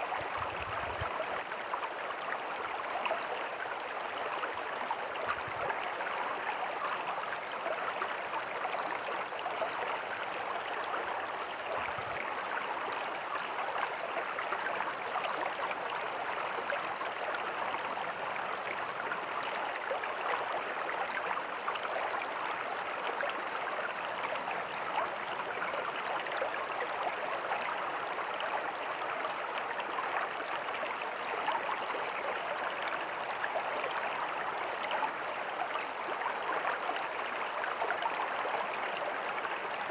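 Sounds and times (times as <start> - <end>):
creek babbling over rocks: 0.0 - 39.9.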